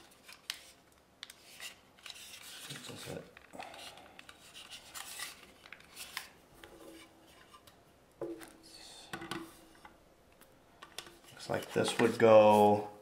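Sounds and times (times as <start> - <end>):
plastic rubbing and rustling: 0.0 - 7.8, 10.8 - 13.0.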